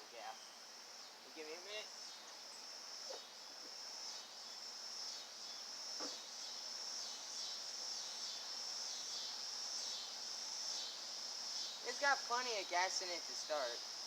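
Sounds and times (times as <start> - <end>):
insects chorus: 0.0 - 14.0
faint knocks: 6.0 - 6.2.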